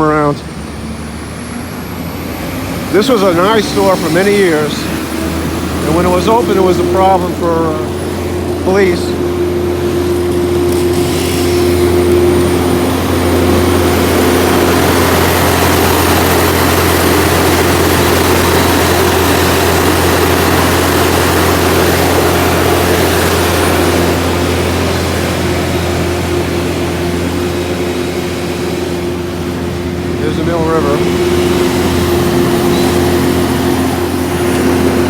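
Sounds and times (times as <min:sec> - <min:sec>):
heavy machinery engines running: 0:00.0 - 0:35.0.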